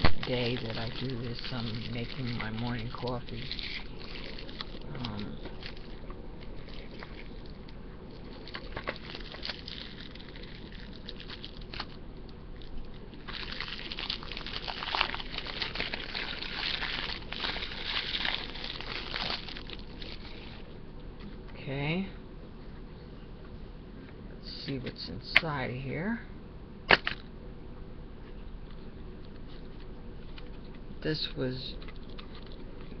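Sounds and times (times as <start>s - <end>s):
coffee percolator bubbling: 0.0s - 20.7s
clicks and crackles: 0.0s - 21.6s, 31.7s - 33.0s.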